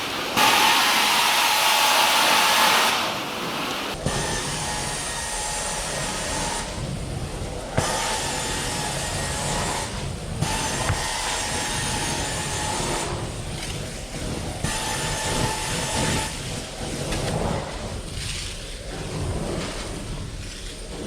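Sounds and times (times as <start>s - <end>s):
extraction wand suction hiss: 0.0s - 4.0s.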